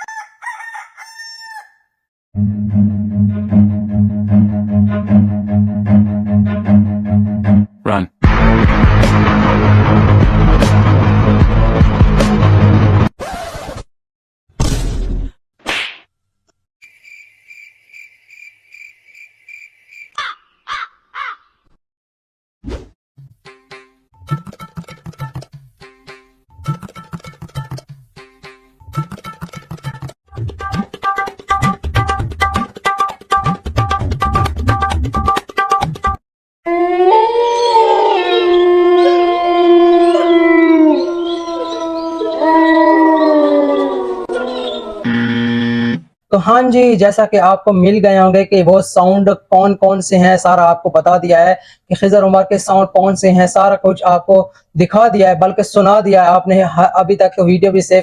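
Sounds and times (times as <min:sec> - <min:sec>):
cricket chirping: 0:16.8 - 0:20.2
crow cawing: 0:20.2 - 0:21.6
dogs howling: 0:36.7 - 0:45.1.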